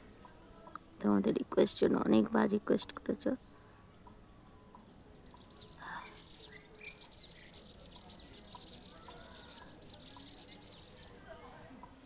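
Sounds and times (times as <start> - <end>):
small bird singing: 3.4 - 12.0.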